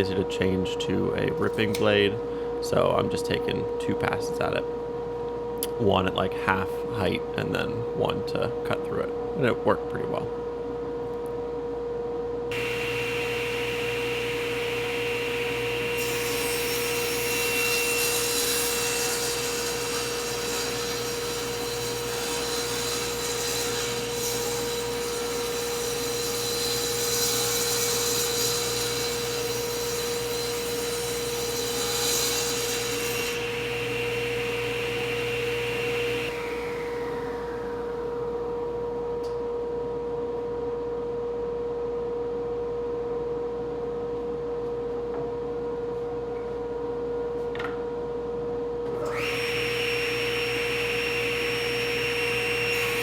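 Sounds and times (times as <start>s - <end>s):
saw blade cutting hiss: 12.5s - 38.3s, 49.1s - 53.0s
table saw motor hum: 12.5s - 38.8s, 49.0s - 53.0s.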